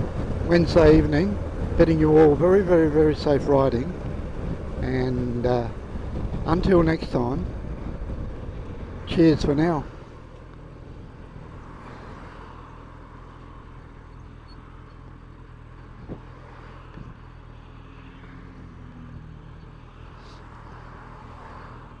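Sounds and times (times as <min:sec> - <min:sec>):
motorcycle engine running: 0:00.0 - 0:11.7
wind and road noise: 0:00.0 - 0:22.0.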